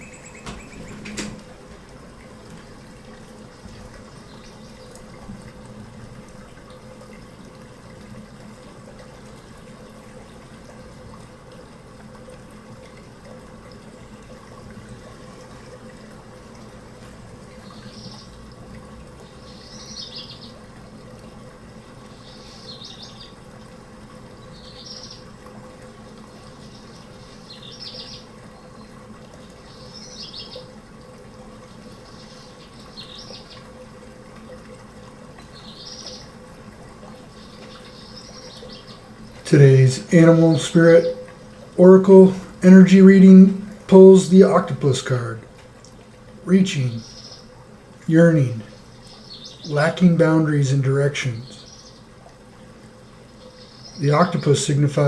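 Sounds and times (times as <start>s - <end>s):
bird chirps: 0.0s - 1.4s
running water rushing: 0.0s - 55.0s.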